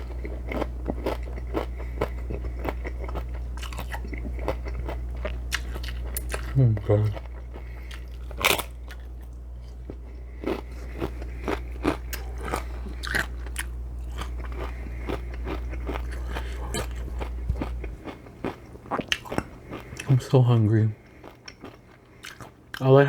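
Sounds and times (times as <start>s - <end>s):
chewing with mouth clicks: 0.0s - 20.3s, 20.9s - 23.0s
steady low hum: 0.0s - 23.0s.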